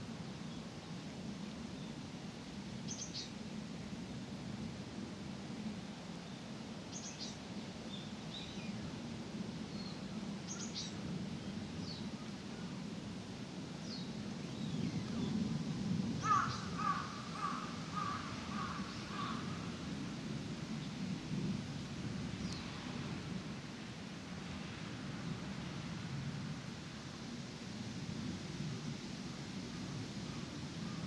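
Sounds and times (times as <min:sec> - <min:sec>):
crow cawing: 0:16.2 - 0:19.5.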